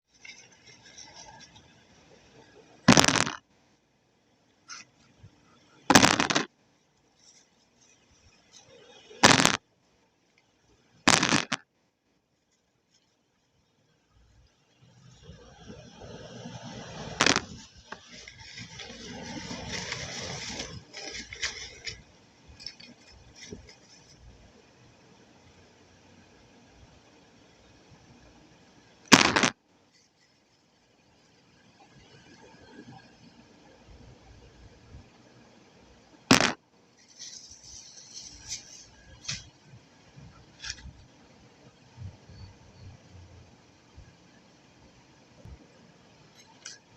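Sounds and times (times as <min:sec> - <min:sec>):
scraping and rustling handling: 0:00.1 - 0:03.3, 0:06.0 - 0:09.6, 0:17.2 - 0:24.5, 0:36.9 - 0:41.0
scratchy hiss: 0:00.1 - 0:03.8, 0:04.5 - 0:11.6, 0:14.4 - 0:46.9
clay crunch: 0:02.9 - 0:03.4, 0:05.9 - 0:06.5, 0:09.2 - 0:09.6, 0:11.1 - 0:11.6, 0:17.2 - 0:22.0, 0:29.1 - 0:29.6, 0:36.3 - 0:36.6.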